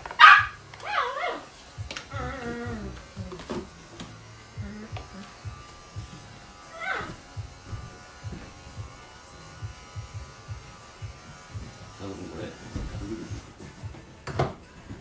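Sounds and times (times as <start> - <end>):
puppy whining: 0.2 - 1.5, 2.1 - 3.0, 6.7 - 7.2.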